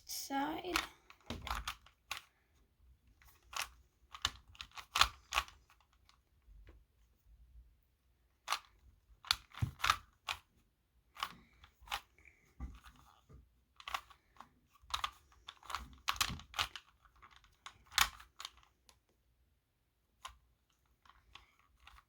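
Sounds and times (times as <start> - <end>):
puzzle cube layers clicking: 3.3 - 5.8.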